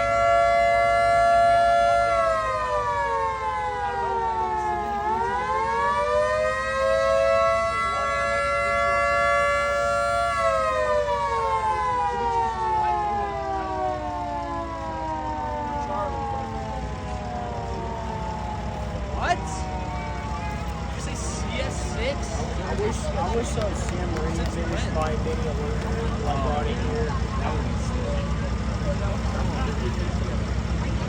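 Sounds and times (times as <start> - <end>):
two-tone siren: 0.0 - 23.4.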